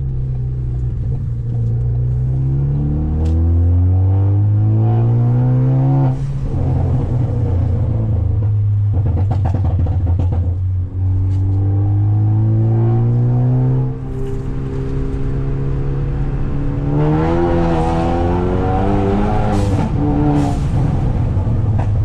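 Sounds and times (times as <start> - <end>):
exhaust pops and crackles: 6.8 - 11.5
car engine revving hard: 11.8 - 21.7.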